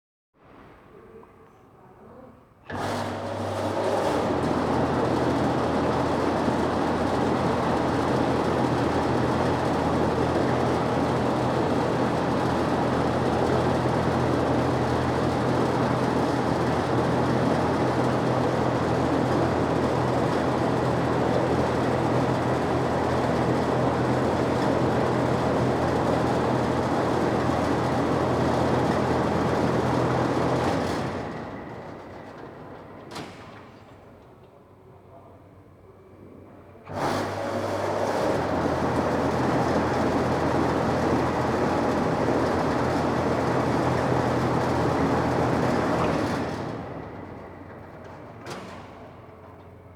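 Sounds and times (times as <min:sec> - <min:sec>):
exhaust fan running: 0:02.7 - 0:33.8, 0:36.8 - 0:49.9.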